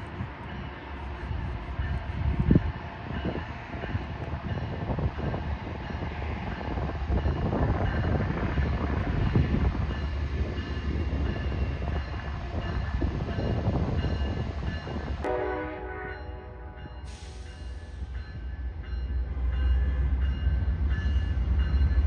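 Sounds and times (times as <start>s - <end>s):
train wheels rumbling on rails: 0.0s - 22.0s
train horn: 15.2s - 17.4s.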